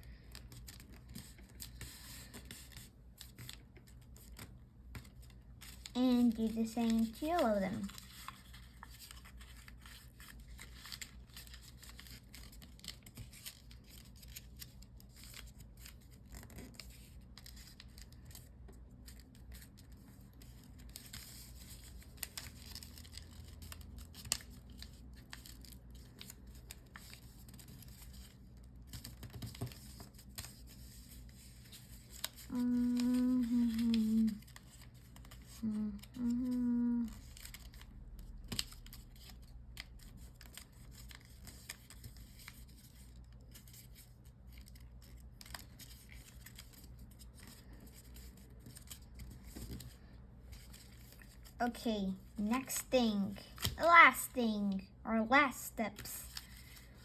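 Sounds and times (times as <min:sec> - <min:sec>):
paper rustling and crinkling: 0:00.1 - 0:54.1, 0:55.9 - 0:57.0
person humming: 0:32.5 - 0:34.4, 0:35.6 - 0:37.2.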